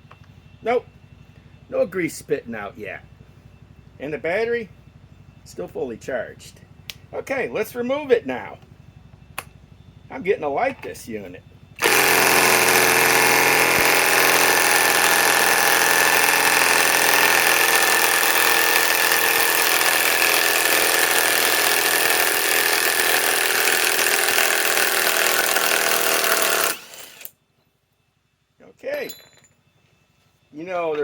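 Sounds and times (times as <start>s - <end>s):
impact wrench running: 11.8s - 27.3s.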